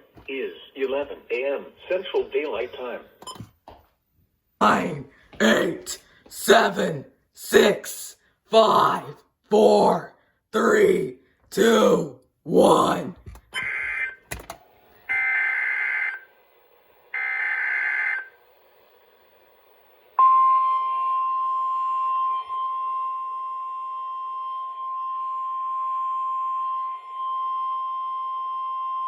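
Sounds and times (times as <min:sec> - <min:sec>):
steady warning alarm tone: 0:04.6 - 0:14.2, 0:15.1 - 0:16.3, 0:17.1 - 0:18.3, 0:20.2 - 0:29.0.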